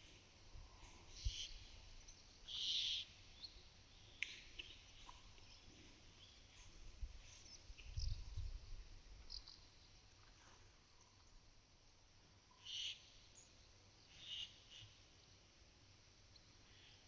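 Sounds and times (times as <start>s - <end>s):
small birds chirping: 0.7s - 10.1s.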